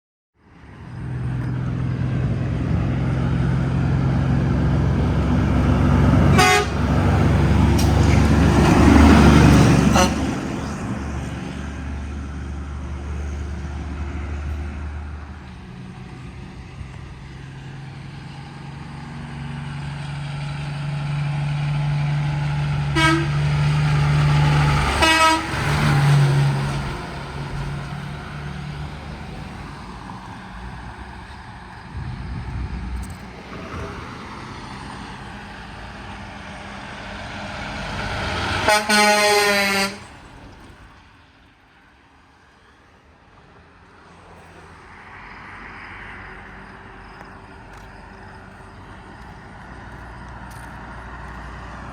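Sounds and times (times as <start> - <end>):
heavy trucks passing: 0.4 - 51.9
short horn toots: 6.3 - 6.8, 23.0 - 23.4, 25.0 - 25.6, 38.7 - 40.1.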